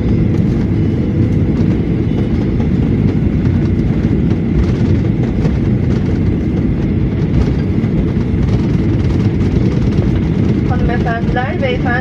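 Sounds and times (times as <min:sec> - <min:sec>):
airliner cabin rumble: 0:00.0 - 0:12.0.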